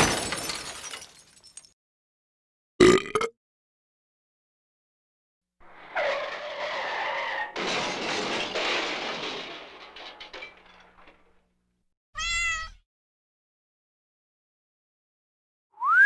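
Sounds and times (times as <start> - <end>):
car tyre screech: 5.6 - 7.6.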